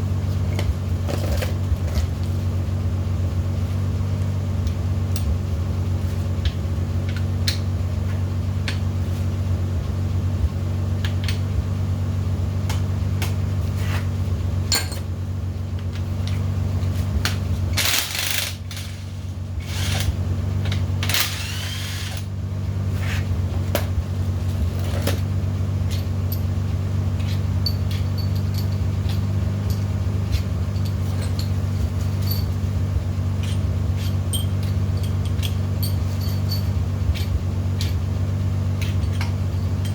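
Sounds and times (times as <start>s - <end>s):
steady low hum: 0.0s - 39.9s
metal tools clinking and clattering: 14.7s - 15.1s, 27.2s - 32.7s, 33.4s - 38.0s, 38.8s - 39.9s.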